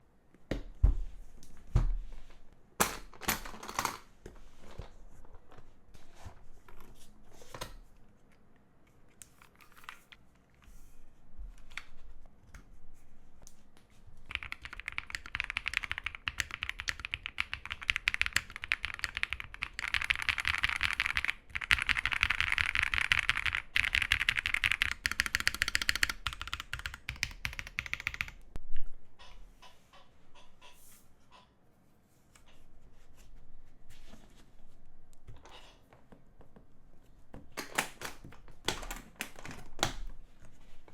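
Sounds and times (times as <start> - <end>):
mechanical keyboard typing: 14.3 - 28.4.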